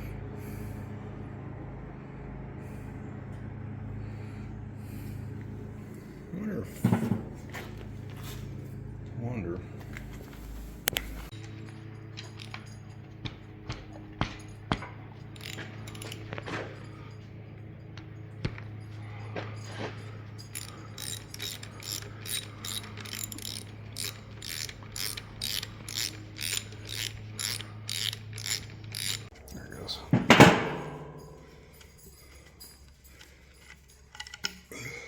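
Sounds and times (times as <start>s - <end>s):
steady low hum: 0.0s - 35.0s
ratchet clicking: 15.2s - 16.5s, 20.4s - 29.6s, 32.7s - 34.7s
loud metal clank: 30.2s - 31.5s.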